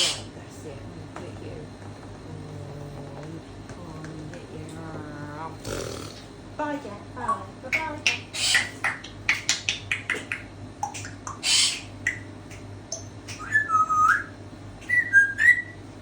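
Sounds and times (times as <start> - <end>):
parrot whistling: 8.1 - 9.7, 10.9 - 12.3, 12.9 - 15.8.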